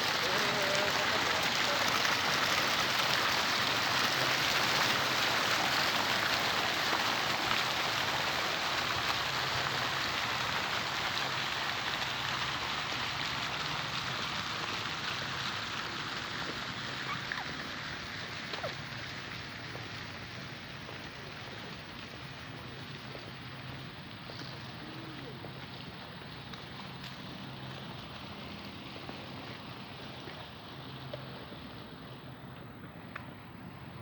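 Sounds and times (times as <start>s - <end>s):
splashing falling water: 0.0s - 32.4s.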